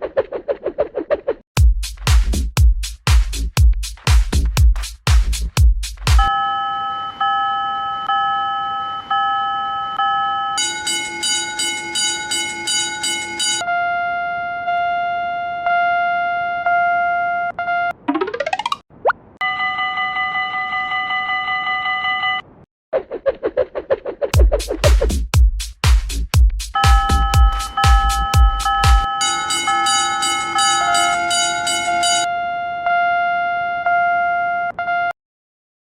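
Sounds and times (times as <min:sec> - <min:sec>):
level crossing warning bells: 0:06.2 - 0:13.7, 0:19.4 - 0:22.4, 0:26.8 - 0:32.3.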